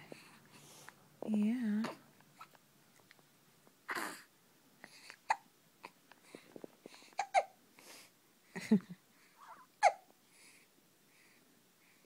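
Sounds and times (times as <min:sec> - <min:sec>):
soft breaths: 0:00.0 - 0:12.0.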